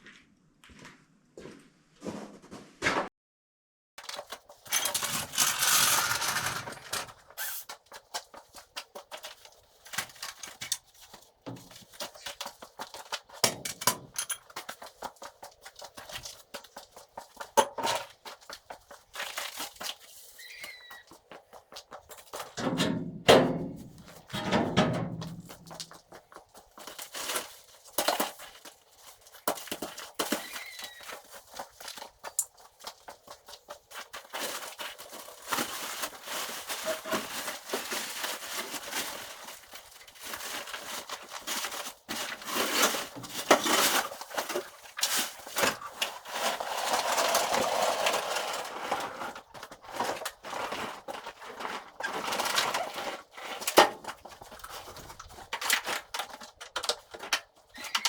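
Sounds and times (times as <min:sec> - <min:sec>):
items knocking and clattering: 0:04.0 - 0:16.8, 0:17.4 - 0:20.0, 0:21.2 - 0:58.0
rustling: 0:04.2 - 0:08.6, 0:25.3 - 0:56.5
scraping: 0:04.7 - 0:07.6.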